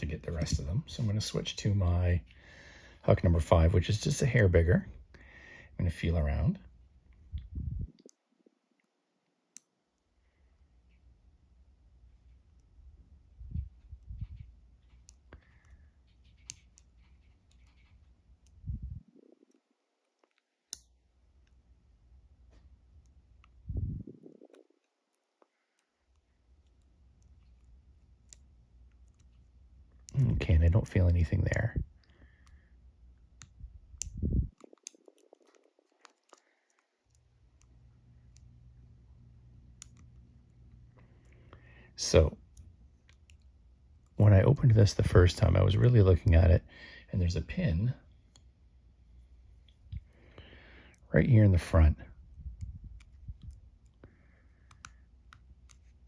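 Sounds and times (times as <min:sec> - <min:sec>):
lock pick clicking and scratching: 0:13.8 - 0:18.6, 0:33.2 - 0:38.5.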